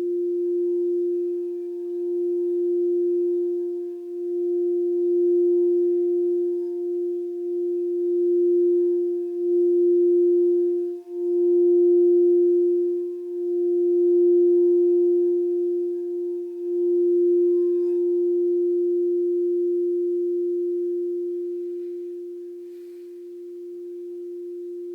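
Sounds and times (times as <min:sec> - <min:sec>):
singing bowl tone: 0:00.0 - 0:24.9.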